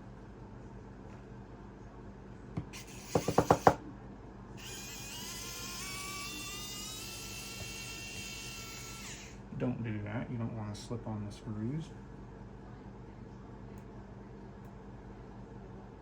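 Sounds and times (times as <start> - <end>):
electric screwdriver whining: 2.7 - 3.8, 4.6 - 9.4.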